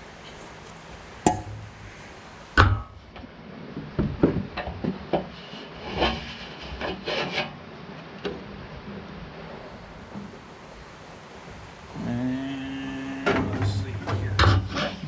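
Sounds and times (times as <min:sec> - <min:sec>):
rubber belt scraping against pulley: 0:05.3 - 0:07.6.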